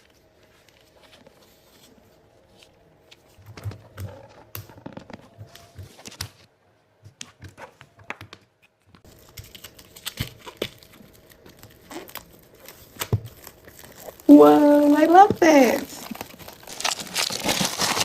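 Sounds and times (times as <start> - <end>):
packaging crinkling and rustling: 9.0 - 18.0.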